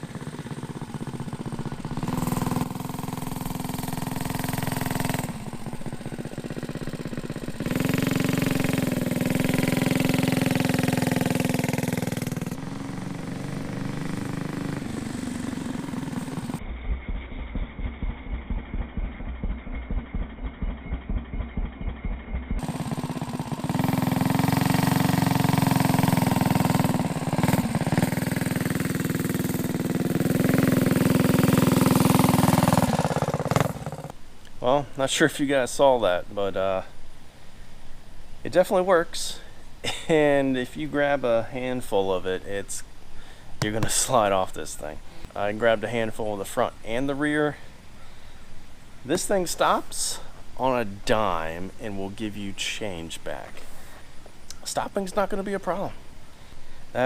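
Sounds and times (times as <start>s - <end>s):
small engine revving: 0.0s - 34.2s.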